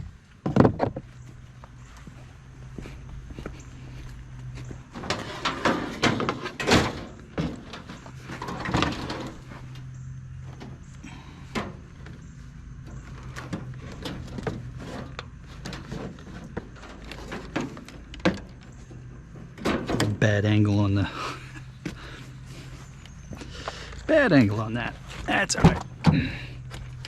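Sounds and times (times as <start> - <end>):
knocks and clatter of metal oven: 4.9 - 10.8, 12.8 - 20.4.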